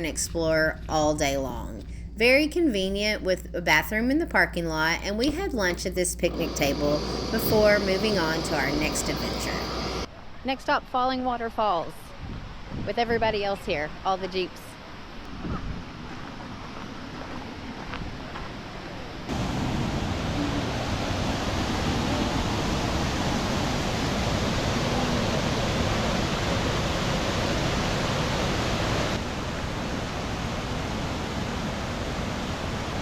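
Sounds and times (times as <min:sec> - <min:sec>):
waterfall rushing: 0:06.4 - 0:10.1, 0:19.3 - 0:33.0.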